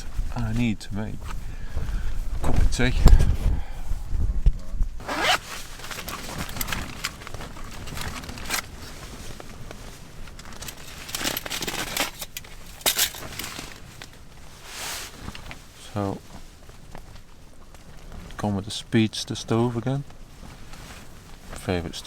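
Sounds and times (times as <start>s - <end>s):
zip being pulled: 5.0s - 7.0s
rustling and scraping: 5.0s - 18.5s, 20.0s - 22.0s.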